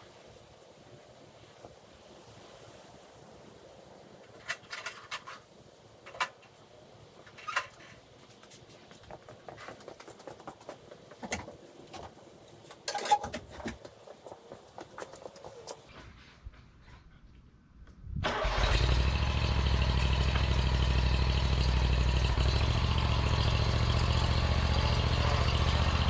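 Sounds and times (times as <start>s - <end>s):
faint steady background noise: 0.0s - 18.0s.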